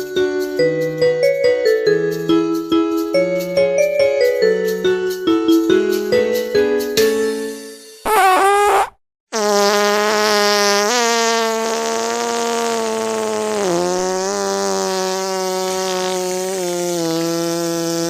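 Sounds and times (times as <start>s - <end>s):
fart sound effect: 8.1s - 18.0s.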